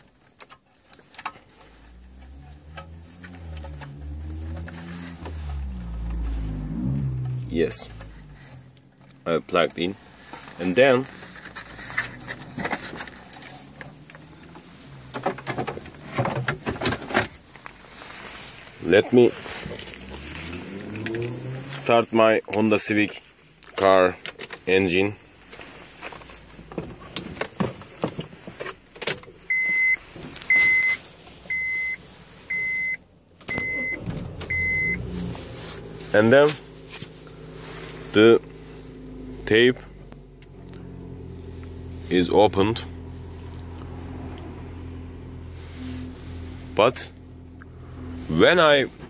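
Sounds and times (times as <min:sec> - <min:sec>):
ignition keys clicking and jingling: 0:00.0 - 0:02.9, 0:33.4 - 0:35.2
car engine running: 0:01.1 - 0:22.2, 0:23.4 - 0:49.0
dashboard chime beeping: 0:29.5 - 0:35.0.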